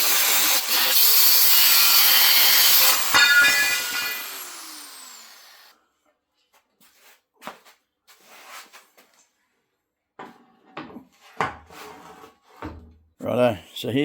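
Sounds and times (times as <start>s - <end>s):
angle grinder spinning down: 0.0s - 5.7s
metal clunks and rubs: 10.2s - 13.0s.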